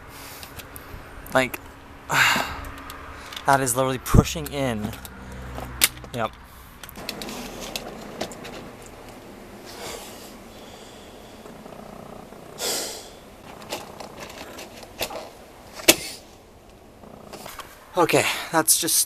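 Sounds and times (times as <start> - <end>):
vent cap scraping: 6.4 - 17.8.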